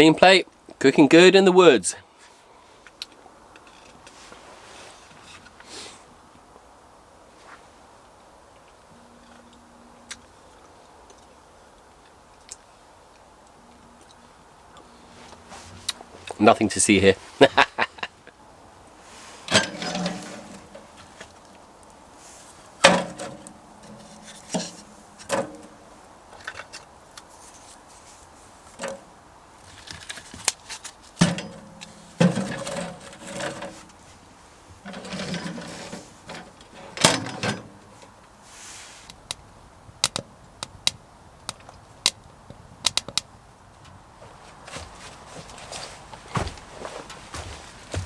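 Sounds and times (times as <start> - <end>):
dishes clinking while washed: 31.2 - 33.8.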